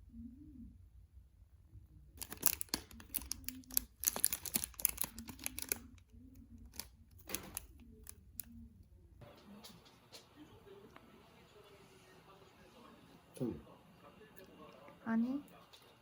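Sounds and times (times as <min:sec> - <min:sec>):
crinkly material crackling: 0:02.2 - 0:08.5.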